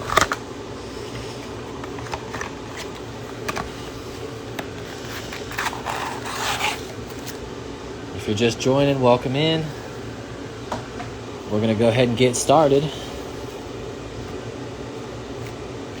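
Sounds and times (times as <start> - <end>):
steady low hum: 0.0 - 16.0
cardboard packaging scraping and rustling: 1.0 - 7.4.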